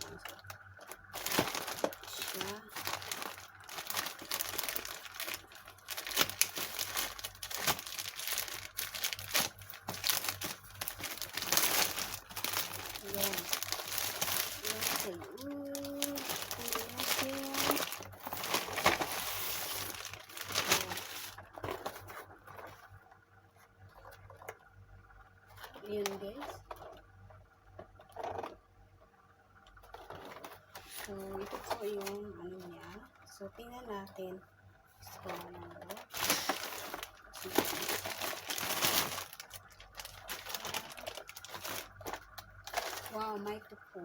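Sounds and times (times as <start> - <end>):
packaging crinkling and rustling: 0.0 - 23.0, 29.8 - 32.8, 35.2 - 43.6.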